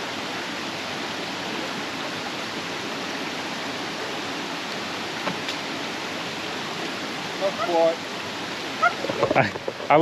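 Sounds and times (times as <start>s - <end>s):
creek and waterfall rushing: 0.0s - 10.0s.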